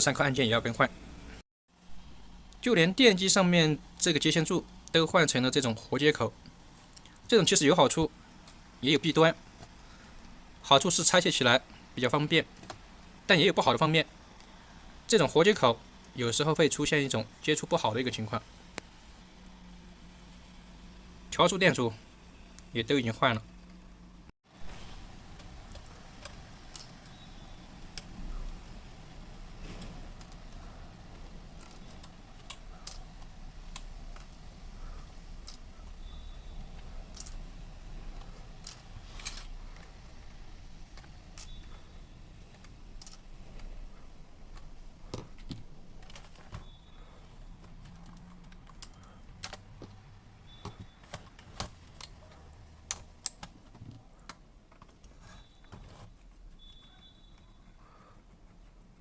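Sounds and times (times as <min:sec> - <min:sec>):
low steady hum: 0:00.0 - 0:59.0
small tools clicking and clinking: 0:25.3 - 0:28.8, 0:29.4 - 0:40.0, 0:40.9 - 0:47.0.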